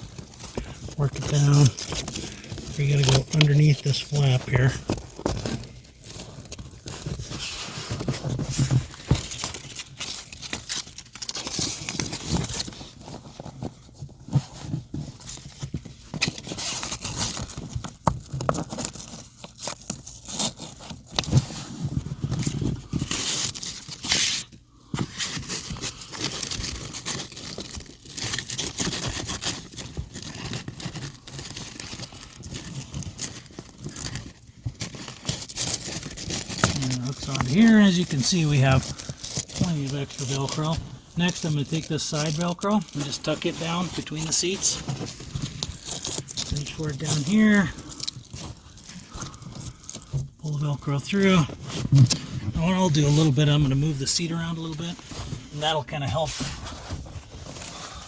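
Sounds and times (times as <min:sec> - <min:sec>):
fabric rustling and scraping: 0:19.6 - 0:58.0.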